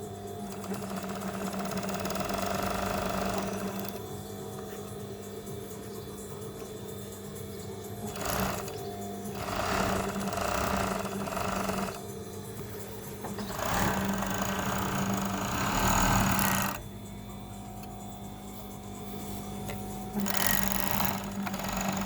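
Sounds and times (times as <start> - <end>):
sewing machine stitching: 0.0 - 4.0, 8.0 - 12.0, 13.3 - 16.8, 20.1 - 22.0
motor humming: 0.0 - 22.0.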